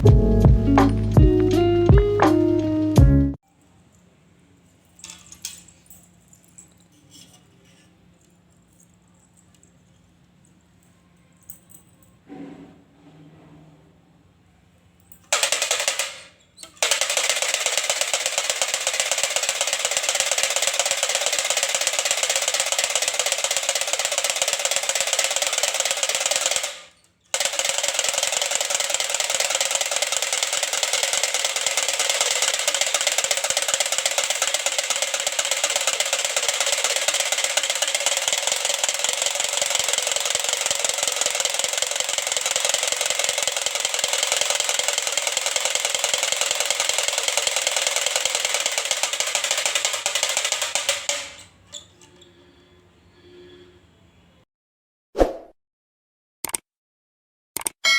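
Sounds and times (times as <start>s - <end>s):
rattle drum clattering clicks: 15.3s - 52.1s.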